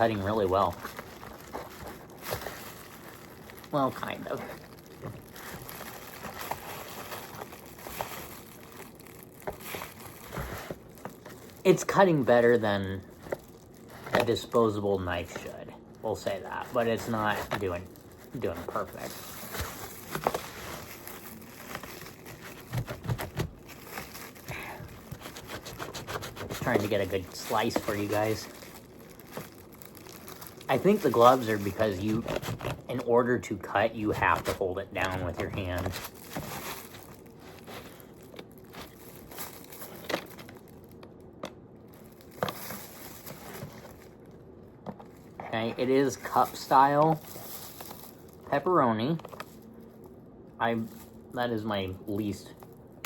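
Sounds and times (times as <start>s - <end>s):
plastic gloves crinkling: 0.0s - 53.0s
knife sawing through pizza box: 25.1s - 26.8s.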